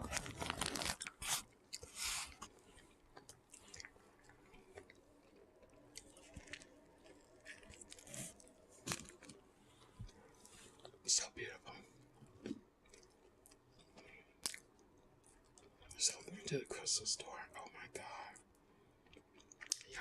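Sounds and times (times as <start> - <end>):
person chewing crunchy food: 0.0 - 11.0, 12.2 - 15.8, 19.0 - 19.9
mouth smacking and clicks: 19.1 - 19.9.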